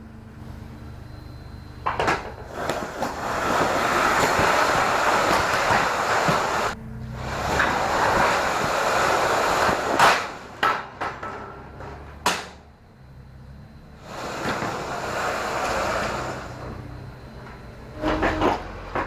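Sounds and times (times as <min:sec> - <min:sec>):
forklift rumbling across trailer floor: 0:00.0 - 0:19.0
sharp knocks and clanks: 0:09.7 - 0:12.6, 0:17.4 - 0:19.0.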